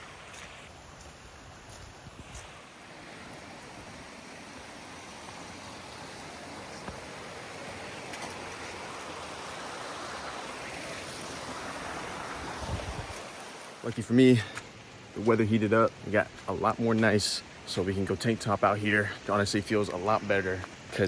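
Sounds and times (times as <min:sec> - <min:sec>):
creek water rushing: 0:00.0 - 0:01.1, 0:02.2 - 0:21.0.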